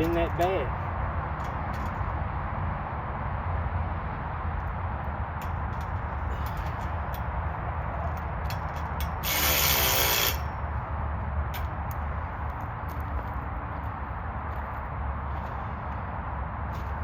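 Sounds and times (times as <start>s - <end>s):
ratchet wrench clicking: 9.0s - 10.5s.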